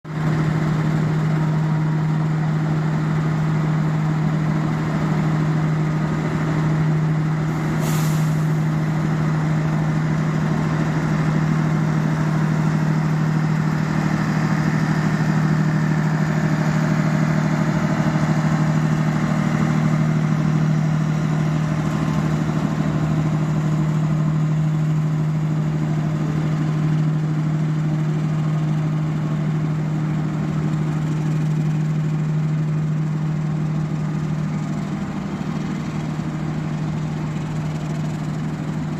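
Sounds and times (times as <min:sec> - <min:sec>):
locomotive humming: 0:00.1 - 0:38.9
air hiss: 0:07.6 - 0:08.6.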